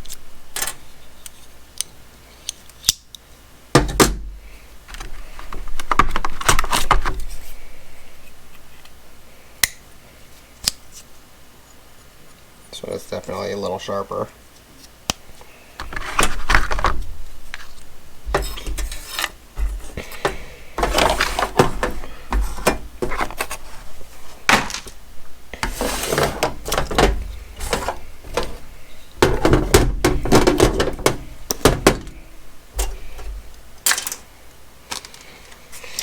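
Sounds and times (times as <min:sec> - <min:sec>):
items thumping down on surface: 0:03.8 - 0:04.4, 0:15.8 - 0:17.6, 0:18.3 - 0:34.1
packaging rustling: 0:15.8 - 0:33.7
clicks and knocks: 0:18.3 - 0:23.6, 0:25.6 - 0:34.2.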